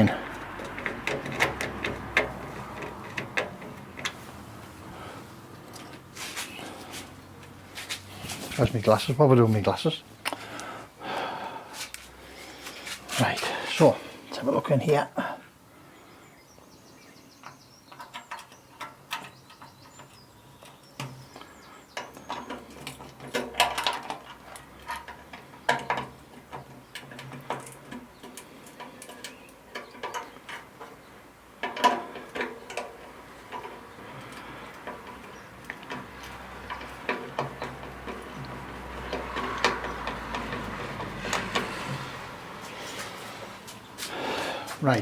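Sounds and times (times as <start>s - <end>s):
spanner clicking and clinking on metal: 0.0s - 4.4s, 31.6s - 42.4s.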